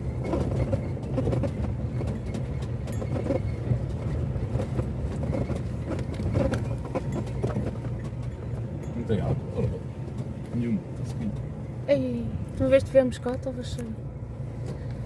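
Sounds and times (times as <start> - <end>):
light knocks and rattles: 0.0 - 11.7
vehicle engine rumbling: 0.0 - 15.0.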